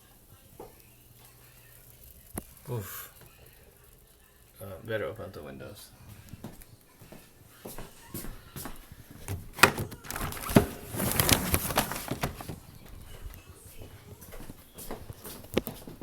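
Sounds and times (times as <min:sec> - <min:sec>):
scraping and rustling: 0:08.8 - 0:16.0.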